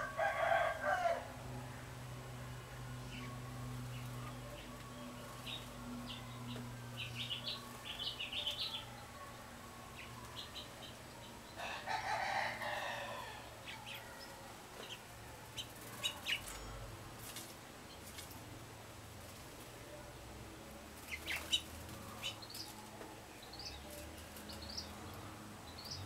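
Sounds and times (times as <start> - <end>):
songbirds chirping: 0.0 - 26.0.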